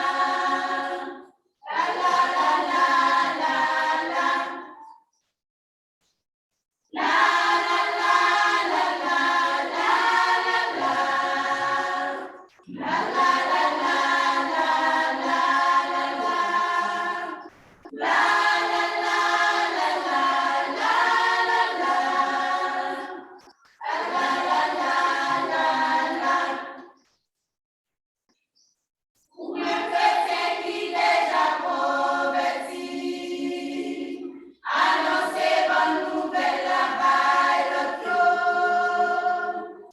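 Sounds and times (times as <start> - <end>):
choir singing a hymn: 0.0 - 4.9, 6.9 - 27.0, 29.4 - 39.9.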